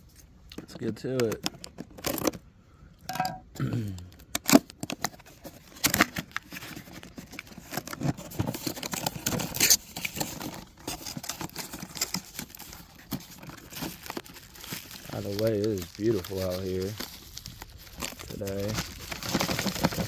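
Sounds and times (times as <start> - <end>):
packaging rustling and tearing: 1.2 - 2.4, 4.2 - 20.0.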